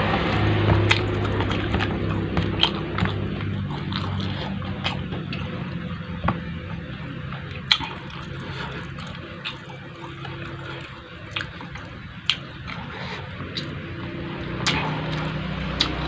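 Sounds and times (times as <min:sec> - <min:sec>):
steady low hum: 0:00.0 - 0:16.0
person chewing and smacking: 0:00.2 - 0:16.0.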